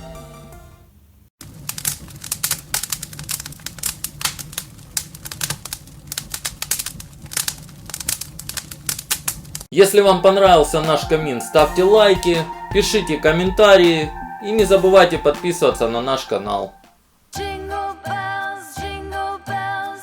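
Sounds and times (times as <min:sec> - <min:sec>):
fire crackling pops and snaps: 0:01.5 - 0:09.7.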